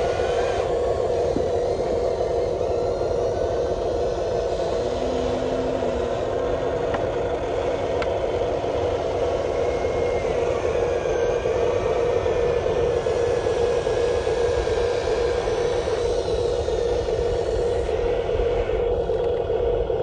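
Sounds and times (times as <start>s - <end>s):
electric motors whirring: 0.0s - 20.0s
faint tones: 4.0s - 8.1s.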